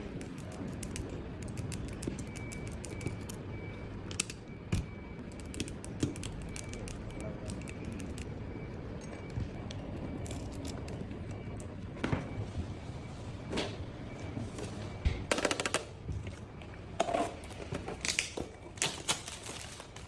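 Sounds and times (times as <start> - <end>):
steady low hum: 0.0 - 18.8.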